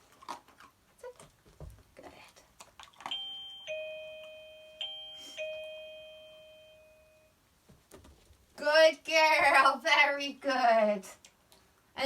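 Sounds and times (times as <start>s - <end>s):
doorbell chime ding-dong: 3.1s - 7.4s.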